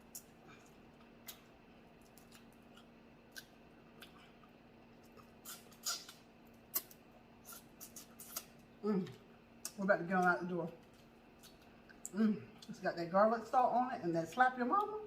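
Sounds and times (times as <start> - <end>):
clicks and crunches of eating: 0.0 - 9.8, 10.7 - 12.7
faint steady hum: 0.0 - 15.0.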